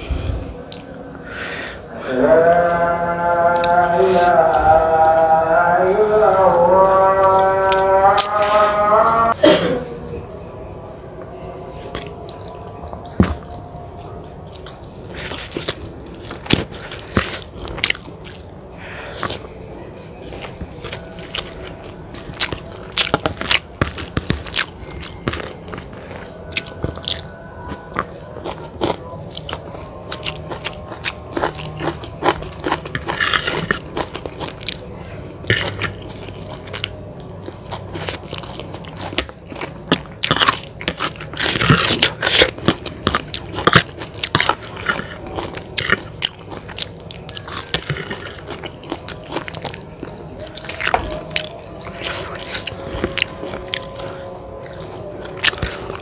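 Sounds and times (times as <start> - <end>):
person chewing crunchy food: 0.0 - 1.4, 2.1 - 9.4, 11.7 - 56.0.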